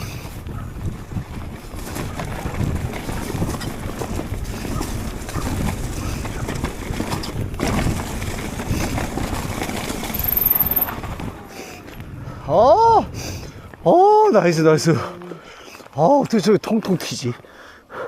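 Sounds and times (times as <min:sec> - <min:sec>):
wind buffeting microphone: 0:00.0 - 0:15.0
mountain bike clattering: 0:00.8 - 0:12.1.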